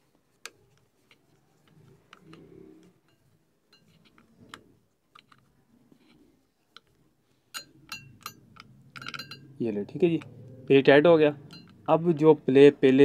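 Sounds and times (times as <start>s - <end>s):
ringing metal clicks: 7.5s - 10.5s, 11.4s - 12.0s.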